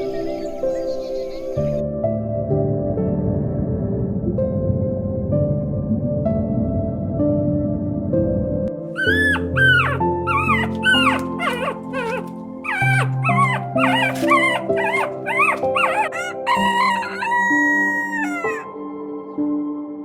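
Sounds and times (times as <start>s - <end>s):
background music with sustained notes: 0.0s - 20.0s
dog yelping: 9.0s - 18.6s.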